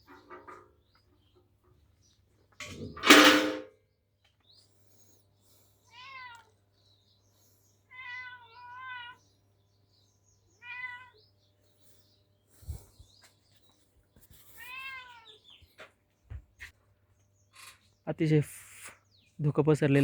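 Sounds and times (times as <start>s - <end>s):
loud knock or clatter: 3.0s - 3.7s
cat meowing: 5.9s - 6.5s, 7.9s - 9.2s, 10.6s - 11.2s, 14.6s - 15.4s.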